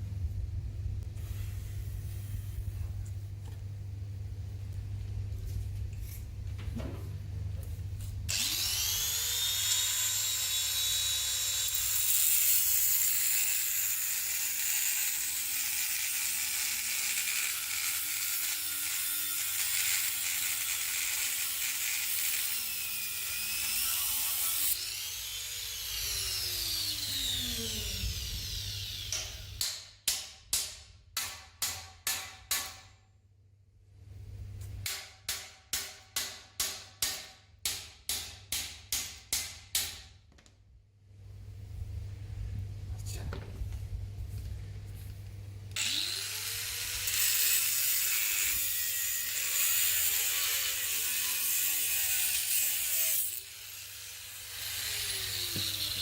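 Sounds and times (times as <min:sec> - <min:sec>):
steady low hum: 0:00.0 - 0:11.9, 0:32.9 - 0:35.9, 0:40.6 - 0:45.8
power tool whining: 0:08.3 - 0:17.0.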